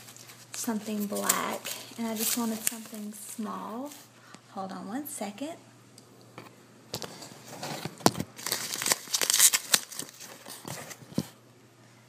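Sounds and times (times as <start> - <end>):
tissue paper crumpling: 0.0 - 4.1, 8.4 - 11.1.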